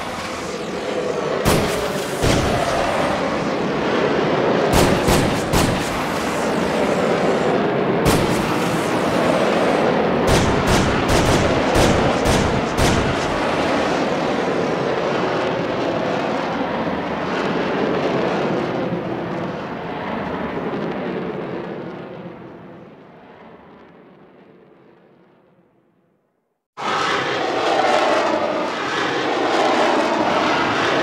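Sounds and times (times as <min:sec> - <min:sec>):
loud rushing drone with hum: 0:00.0 - 0:17.2
gunshots: 0:01.4 - 0:03.4, 0:04.7 - 0:07.0, 0:08.0 - 0:13.9.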